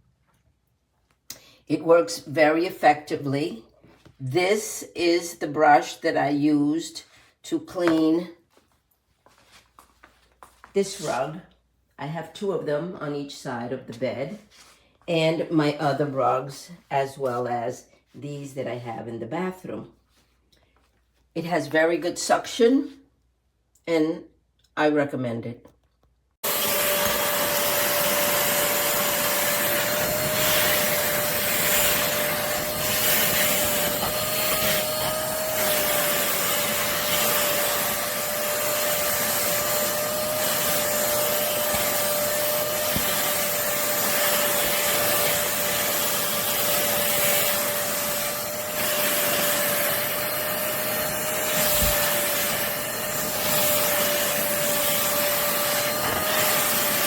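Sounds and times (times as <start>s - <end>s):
vacuum cleaner running: 26.4s - 57.0s.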